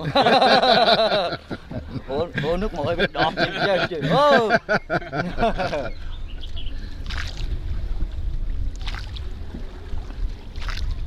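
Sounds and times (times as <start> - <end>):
wind rumble on microphone: 4.7 - 11.0
paddle splashing in water: 6.4 - 11.0.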